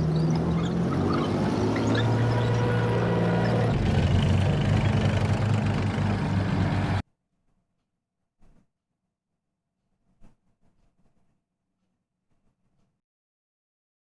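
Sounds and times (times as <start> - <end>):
heavy engine running: 1.9 - 7.0.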